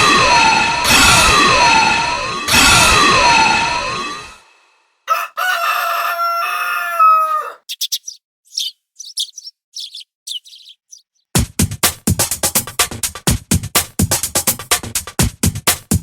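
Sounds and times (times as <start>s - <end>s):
rooster crowing: 5.1s - 7.7s
short high bird chirps: 7.6s - 11.3s
music with drum-machine beat: 11.4s - 16.0s.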